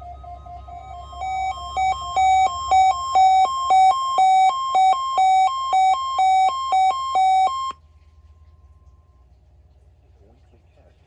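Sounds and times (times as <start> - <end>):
two-note electronic alarm beeping: 0.0 - 7.8.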